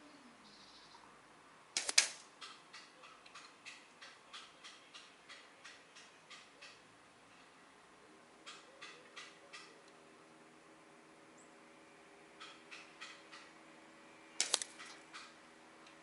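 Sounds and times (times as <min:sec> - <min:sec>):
air rifle shot: 0:01.8 - 0:02.2, 0:14.4 - 0:14.8
small click: 0:14.4 - 0:15.0.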